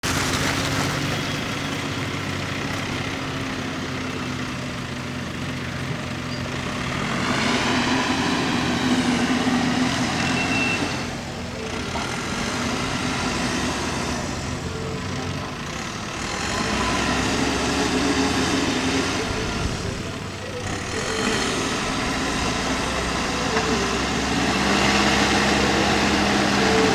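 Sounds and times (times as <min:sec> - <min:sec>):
excavator diesel engine running: 0:00.0 - 0:26.9.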